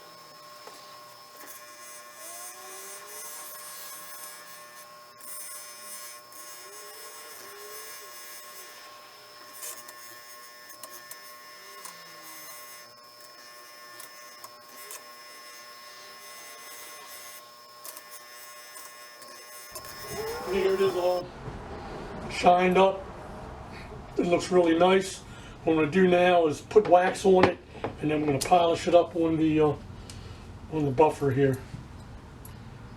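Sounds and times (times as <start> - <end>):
polishing wheel whining: 0.0 - 25.2.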